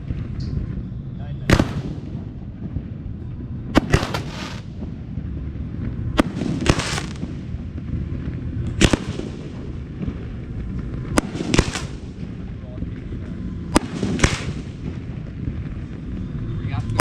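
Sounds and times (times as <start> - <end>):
crackling hiss: 0.0 - 17.0
fireworks shells bursting: 3.8 - 4.7.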